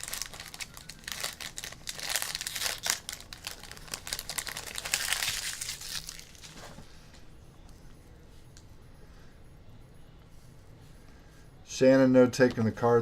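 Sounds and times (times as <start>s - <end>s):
plastic wrapping tearing and crinkling: 0.0s - 6.6s.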